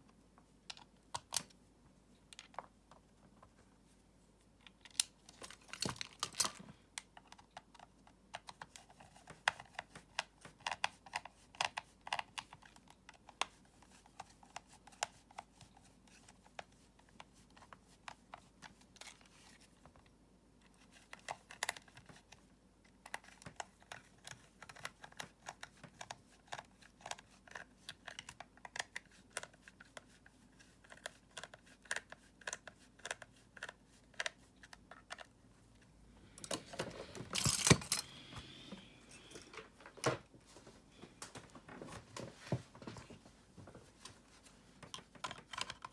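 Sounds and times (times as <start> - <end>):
small hard parts clicking: 36.4 - 38.2.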